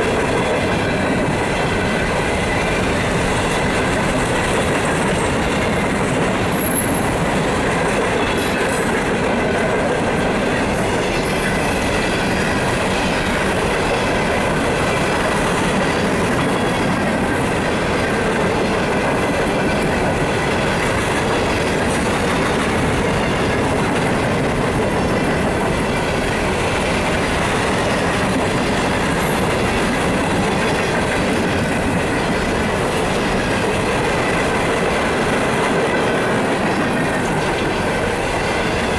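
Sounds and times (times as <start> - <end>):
freight train wheels rumbling: 0.0 - 38.9.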